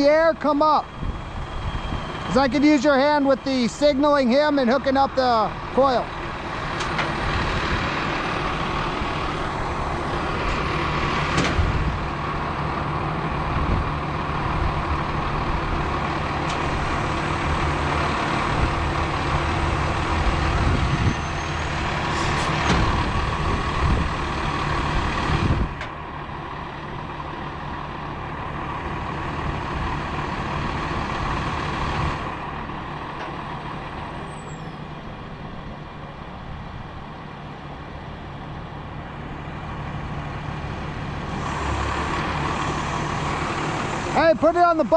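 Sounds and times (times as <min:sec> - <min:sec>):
truck engine running under load: 0:00.0 - 0:44.9.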